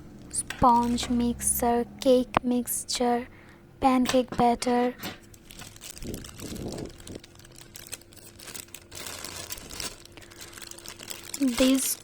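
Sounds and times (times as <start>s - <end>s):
plastic packaging crinkling: 0.2s - 1.4s, 4.7s - 12.0s.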